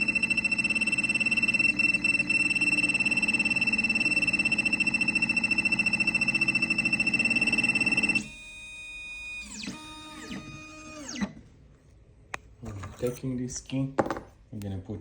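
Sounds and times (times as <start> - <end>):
stepper motors whining: 0.0 - 11.4.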